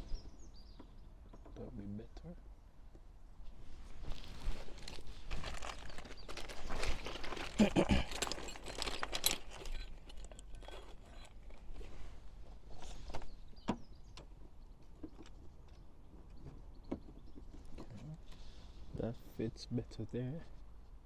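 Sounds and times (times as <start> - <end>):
repair kit parts clicking: 6.3 - 11.7.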